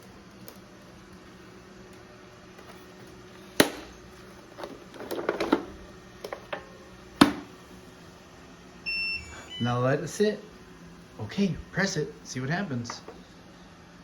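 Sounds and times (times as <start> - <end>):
plastic robot vacuum knocking: 4.6 - 7.5, 12.9 - 13.2.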